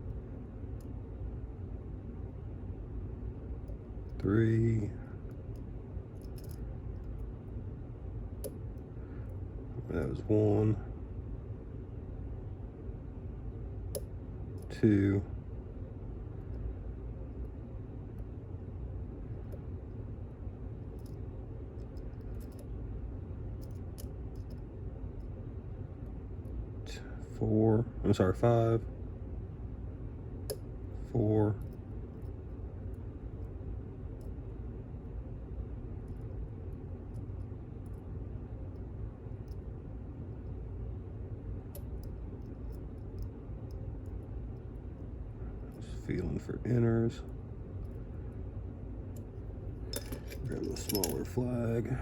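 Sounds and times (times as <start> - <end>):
low background hum: 0.0 - 52.0
lock pick clicking and scraping: 49.2 - 51.4.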